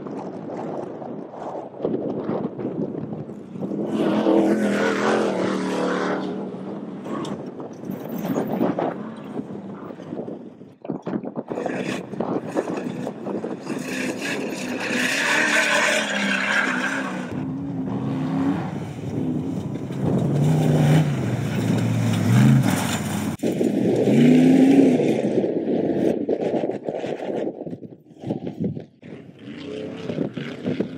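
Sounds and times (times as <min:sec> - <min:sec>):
tyre and dirt noise: 0:00.0 - 0:30.9
race vehicle engines revving: 0:03.3 - 0:10.6, 0:11.4 - 0:26.2, 0:28.2 - 0:30.9.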